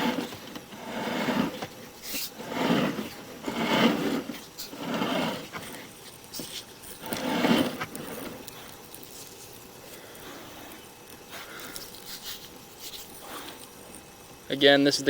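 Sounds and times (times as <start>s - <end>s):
cable rubbing and scraping: 0.0s - 14.5s.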